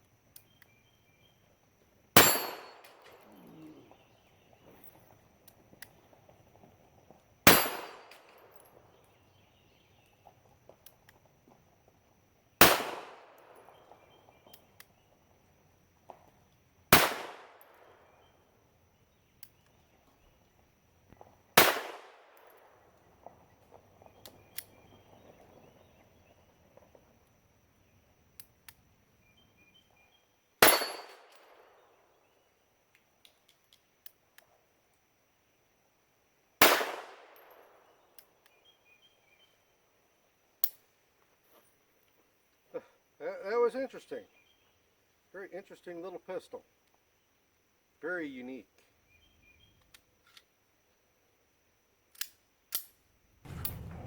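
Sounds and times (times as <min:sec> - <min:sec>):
pistol shots: 0:02.2 - 0:03.2, 0:07.5 - 0:08.5, 0:12.6 - 0:13.8, 0:16.9 - 0:17.9, 0:21.6 - 0:22.5, 0:30.6 - 0:31.6, 0:36.6 - 0:37.7, 0:53.5 - 0:54.0.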